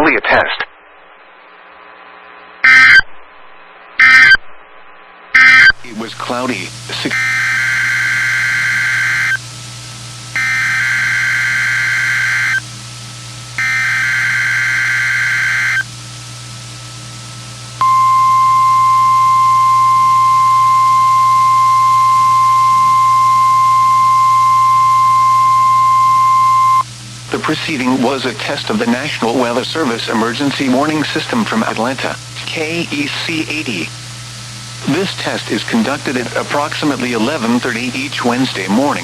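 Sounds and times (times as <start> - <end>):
faint low broadcast hum: 0.0 - 39.0
buzzy digital header bursts: 5.4 - 9.5, 10.3 - 12.6, 13.6 - 15.9, 17.8 - 39.0
steady warning alarm tone: 5.4 - 9.5, 10.3 - 12.7, 13.6 - 15.9, 17.8 - 31.9.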